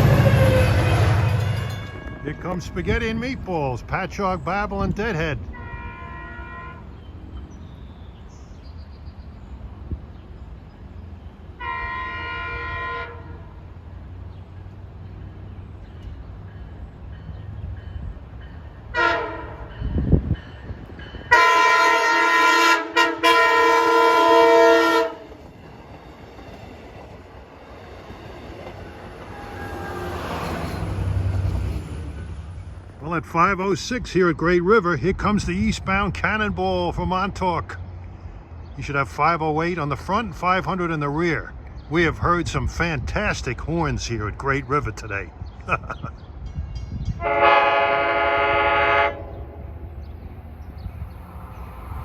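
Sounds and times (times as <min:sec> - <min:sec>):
train horn blasts: 0:00.0 - 0:02.2, 0:05.5 - 0:07.0, 0:11.6 - 0:13.6, 0:18.9 - 0:20.0, 0:21.2 - 0:25.4, 0:47.0 - 0:49.8
train rumble: 0:00.0 - 0:52.0.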